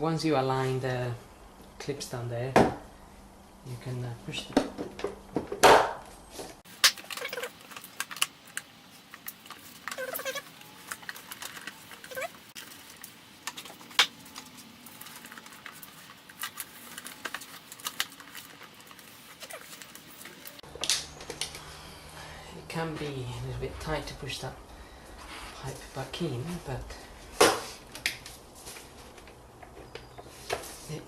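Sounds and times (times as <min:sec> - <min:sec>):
plastic squeaks: 0:06.9 - 0:20.6.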